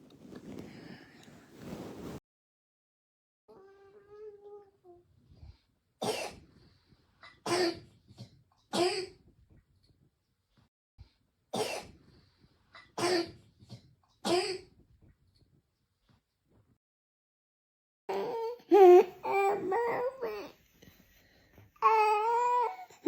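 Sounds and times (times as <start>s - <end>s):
child barking cough: 6.0s - 6.4s, 7.3s - 9.2s, 11.6s - 11.9s, 12.8s - 13.4s, 14.3s - 14.7s.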